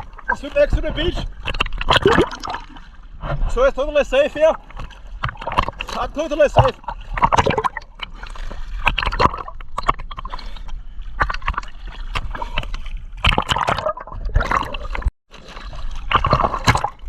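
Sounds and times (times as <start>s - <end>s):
water splashing from swimming: 1.2s - 3.0s, 4.4s - 17.0s.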